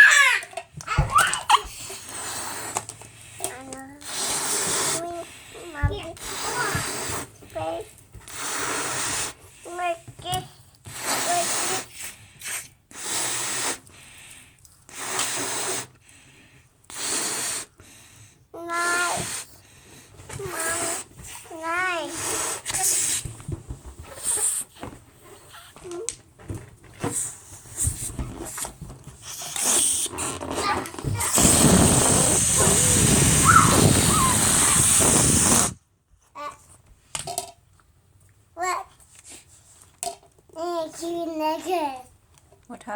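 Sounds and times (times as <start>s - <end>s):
high squeaky balloon sound: 0.0s - 2.8s, 3.4s - 9.4s, 10.9s - 12.1s, 18.7s - 19.5s, 20.4s - 23.3s, 24.1s - 24.7s, 27.0s - 35.8s
hissing puffs of breath: 1.5s - 9.9s, 10.8s - 23.3s, 24.1s - 25.8s, 27.0s - 28.6s, 29.2s - 30.4s, 31.1s - 35.8s
loud hissing rush of air: 2.0s - 2.8s, 4.0s - 5.6s, 6.2s - 7.4s, 8.3s - 9.4s, 11.0s - 12.0s, 12.9s - 13.8s, 14.9s - 15.9s, 16.9s - 17.7s, 22.1s - 23.3s, 31.2s - 35.8s.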